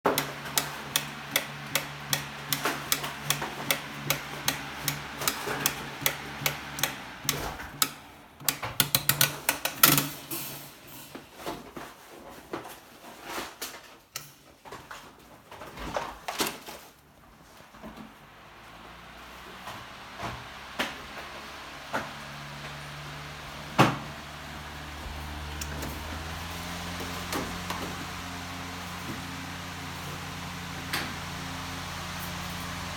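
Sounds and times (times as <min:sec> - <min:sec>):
fan humming: 0:00.0 - 0:11.2, 0:15.9 - 0:32.9
fan clicking: 0:00.1 - 0:10.6, 0:17.8 - 0:32.9.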